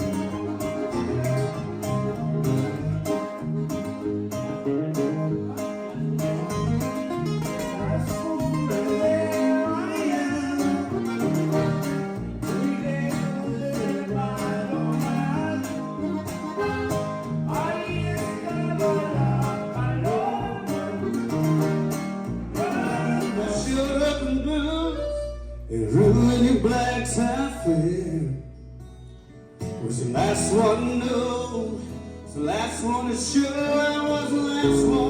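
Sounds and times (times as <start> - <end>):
plucked and strummed guitar: 0.0 - 35.0
person singing: 7.4 - 11.4, 12.5 - 16.2, 17.5 - 21.3, 22.6 - 28.4, 32.4 - 35.0.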